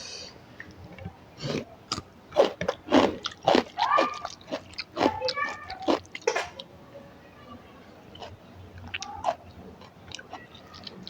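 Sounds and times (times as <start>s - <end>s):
person chewing with wet smacks: 0.9s - 6.7s, 8.1s - 11.0s.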